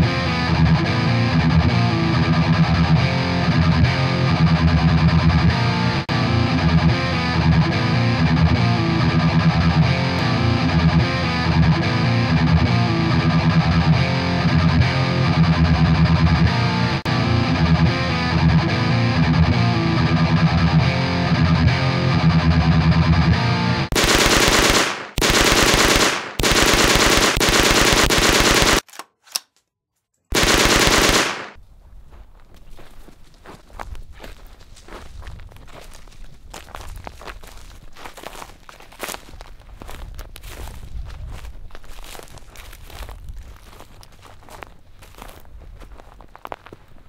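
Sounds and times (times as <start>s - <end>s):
distorted electric guitar music: 0.0s - 25.3s
machine-gun fire: 23.9s - 28.9s, 30.3s - 31.6s.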